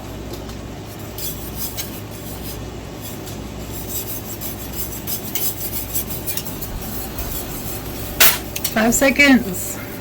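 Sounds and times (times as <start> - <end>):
steady background noise: 0.0 - 10.0
spoon scraping a pot: 1.0 - 9.0.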